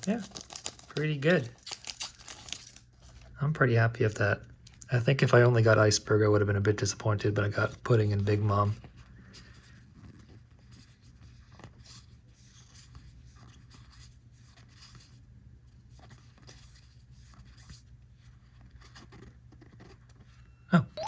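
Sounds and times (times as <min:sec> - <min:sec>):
paper cards rustling and flicking: 0:00.0 - 0:03.4.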